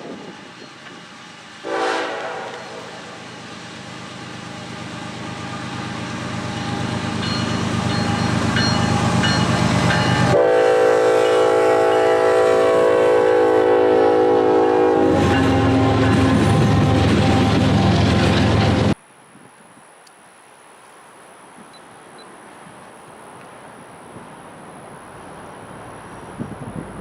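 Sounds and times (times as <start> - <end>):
diesel locomotive passing: 0.0 - 19.0, 21.2 - 27.0
train air horn: 1.6 - 3.3, 10.1 - 18.1.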